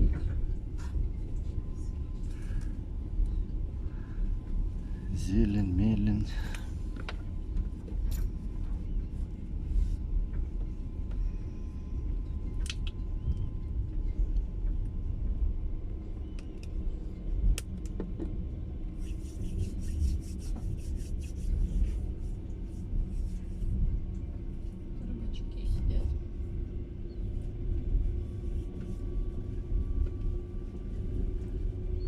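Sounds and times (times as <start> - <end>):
train clicks and knocks: 0.0 - 1.1
train rumble inside carriage: 0.0 - 32.0.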